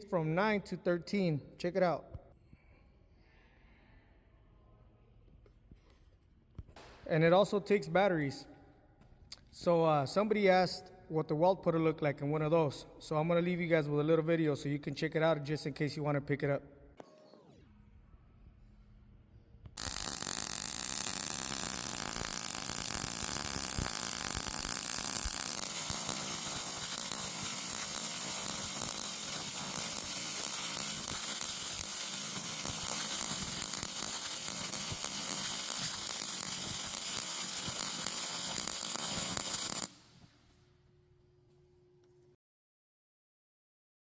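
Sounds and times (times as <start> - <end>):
welding arc crackling: 19.8 - 40.1.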